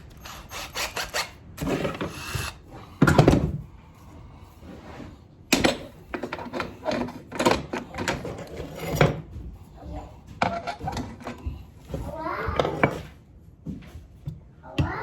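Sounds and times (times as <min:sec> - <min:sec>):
tools and parts being handled: 0:05.5 - 0:09.4.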